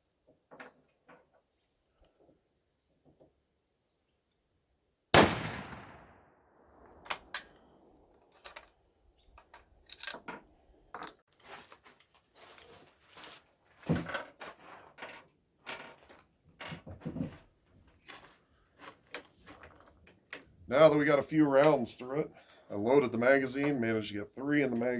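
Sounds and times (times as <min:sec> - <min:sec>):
rifle shot: 0:05.1 - 0:07.0.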